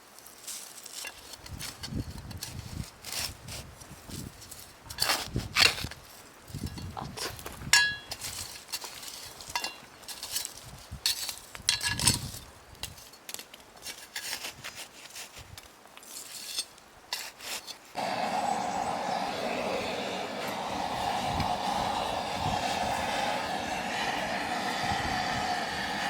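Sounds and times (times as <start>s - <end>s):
steady rushing noise: 18.0s - 26.0s.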